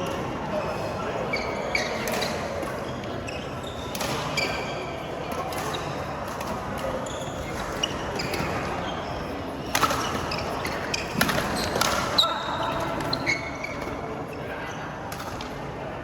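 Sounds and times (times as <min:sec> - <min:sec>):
background chatter: 0:00.0 - 0:16.0
shoes squeaking on court: 0:00.1 - 0:14.8
racket hitting shuttlecock: 0:09.6 - 0:12.2.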